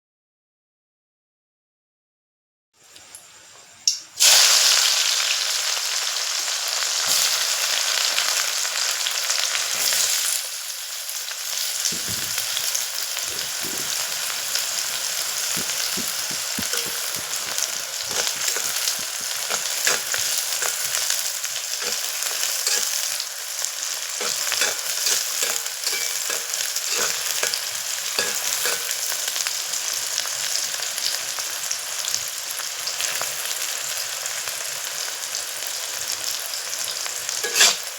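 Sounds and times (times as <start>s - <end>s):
food sizzling in hot oil: 2.8s - 37.9s
spatula scraping a pan: 12.0s - 29.5s, 37.3s - 37.9s.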